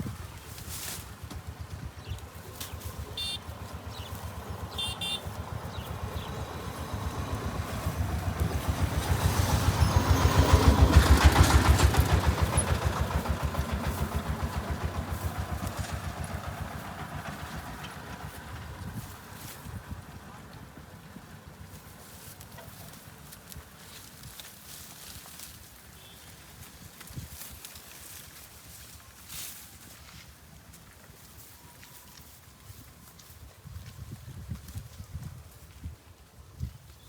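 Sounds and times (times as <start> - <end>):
vehicle engine passing by: 0.6 - 23.4.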